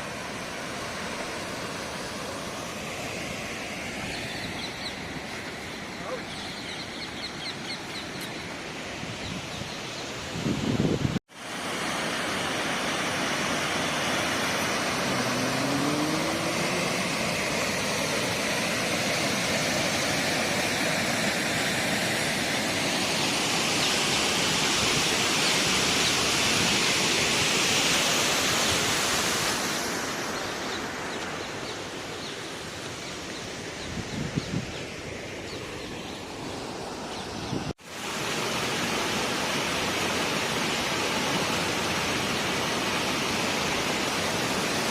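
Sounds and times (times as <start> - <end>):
waterfall rushing: 11.3 - 33.0, 37.9 - 44.9.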